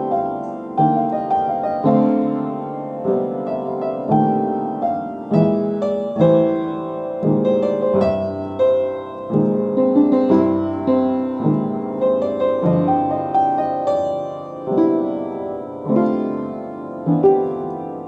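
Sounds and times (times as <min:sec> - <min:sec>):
slow blues piano: 0:00.0 - 0:18.0.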